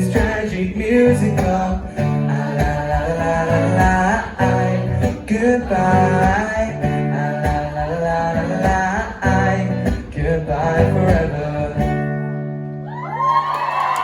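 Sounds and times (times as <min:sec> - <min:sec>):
people singing: 0:00.0 - 0:12.1
acoustic guitar strumming: 0:00.0 - 0:12.9
audience cheering and screaming: 0:12.8 - 0:14.0.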